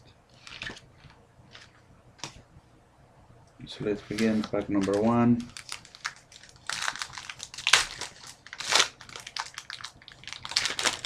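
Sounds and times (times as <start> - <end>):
wrapper tearing and crinkling: 4.1 - 11.0.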